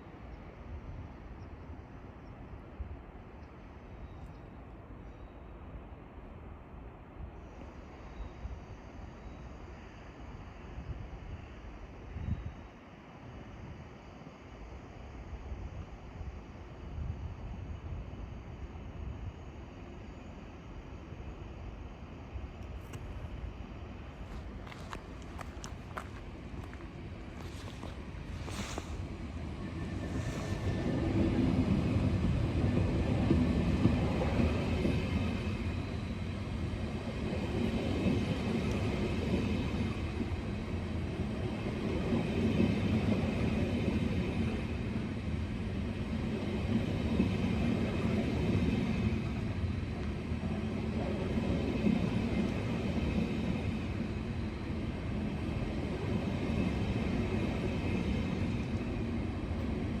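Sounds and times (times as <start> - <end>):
train rumbling on track: 0.0 - 60.0.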